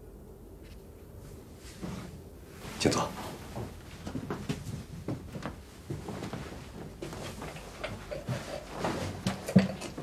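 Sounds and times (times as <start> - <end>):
wooden chairs knocking and scraping: 3.6 - 10.0.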